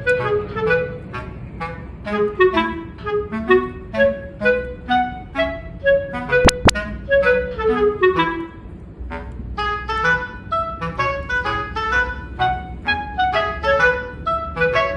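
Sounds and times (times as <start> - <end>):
woodwind melody: 0.0 - 14.9
sharp clicks: 6.4 - 6.8.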